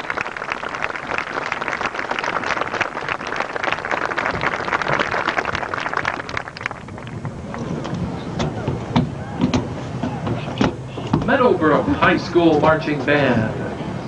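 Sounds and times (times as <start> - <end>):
crowd applauding: 0.0 - 7.7.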